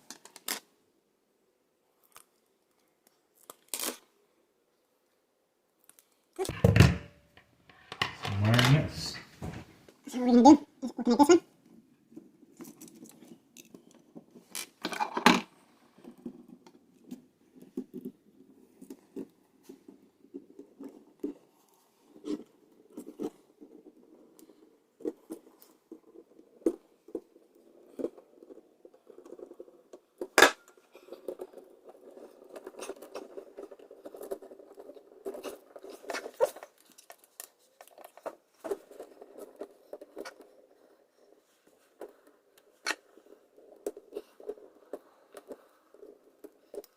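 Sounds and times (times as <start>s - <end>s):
wires clicking and rustling: 12.1s - 46.9s.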